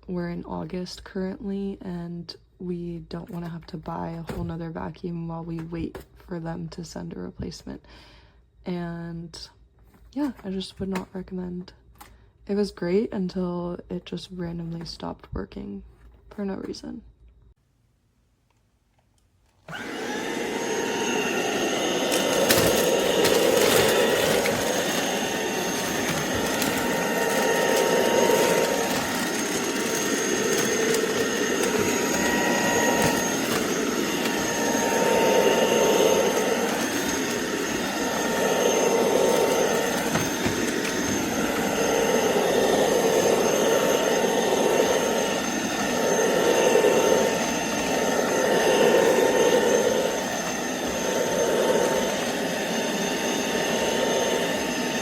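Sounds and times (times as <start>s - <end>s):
vacuum cleaner high whine: 19.6s - 55.0s.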